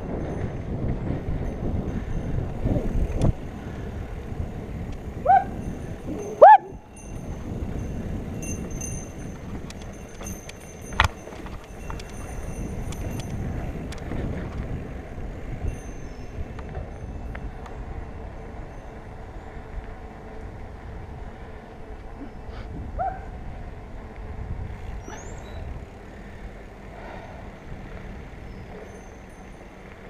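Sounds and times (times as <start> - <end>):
wind on microphone: 0.0 - 26.0
bike tyre and frame rumble: 0.0 - 30.0
bike brake squeal: 24.9 - 25.8.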